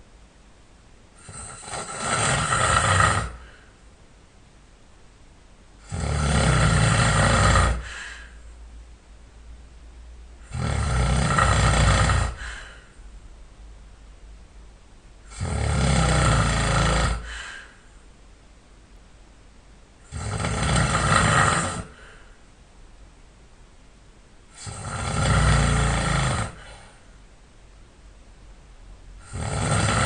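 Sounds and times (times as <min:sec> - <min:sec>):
quiet breathing: 0:01.1 - 0:04.0, 0:05.8 - 0:08.8, 0:10.4 - 0:13.3, 0:15.2 - 0:18.2, 0:20.0 - 0:22.6, 0:24.5 - 0:27.3
man snoring: 0:01.2 - 0:03.6, 0:05.8 - 0:08.2, 0:10.4 - 0:12.8, 0:15.3 - 0:17.4, 0:20.0 - 0:22.2, 0:24.5 - 0:27.0, 0:29.2 - 0:30.0.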